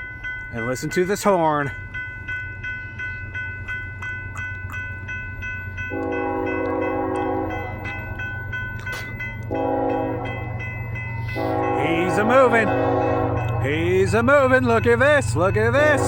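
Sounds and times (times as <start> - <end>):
diesel locomotive rumble: 0.0 - 16.0
railroad crossing bell ringing: 0.0 - 16.0
locomotive air horn: 5.9 - 7.8, 9.5 - 10.3, 11.2 - 13.6.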